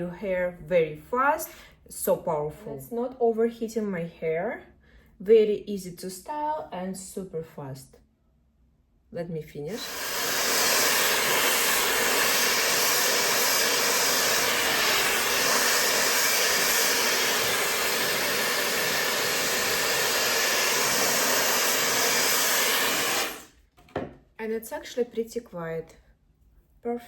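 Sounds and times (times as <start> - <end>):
hair dryer blowing: 9.7 - 23.5
hair dryer switching off: 9.7 - 23.5.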